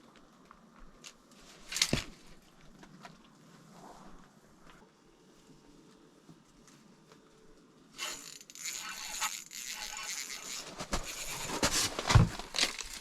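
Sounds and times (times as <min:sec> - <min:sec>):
fishing reel clicking and rattling: 0:08.0 - 0:11.6, 0:12.6 - 0:13.0.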